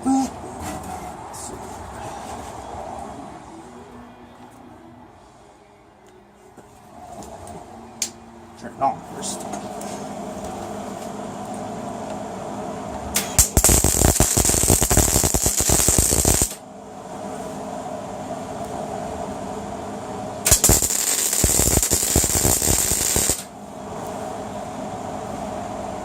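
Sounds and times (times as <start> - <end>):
steady hum: 0.0 - 26.0
arc welder crackling: 13.1 - 16.6, 20.4 - 24.2.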